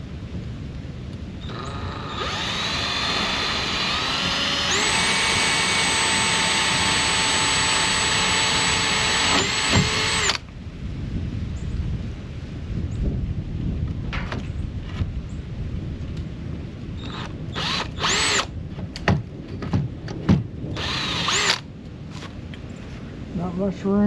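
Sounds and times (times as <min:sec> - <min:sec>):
power drill motor whine: 0:01.4 - 0:10.4, 0:17.0 - 0:18.5, 0:20.8 - 0:21.6.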